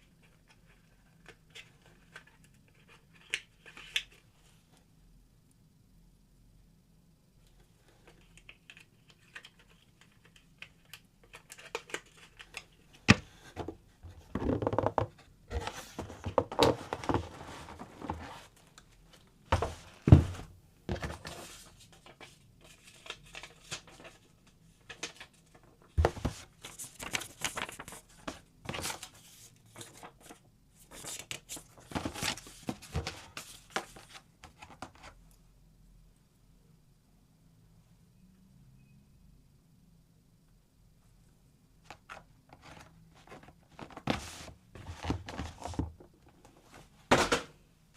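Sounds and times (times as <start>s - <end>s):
plastic and paper crinkling: 21.0s - 35.1s.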